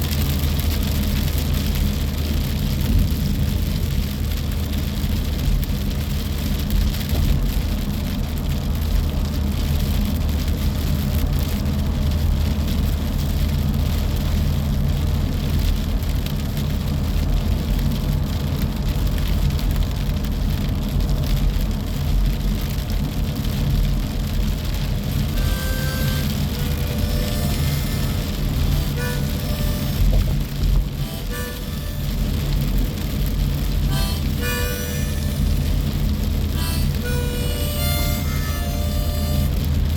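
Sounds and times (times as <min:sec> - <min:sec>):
raindrops pattering: 0:00.0 - 0:25.4
low rumble and hum: 0:00.0 - 0:39.9.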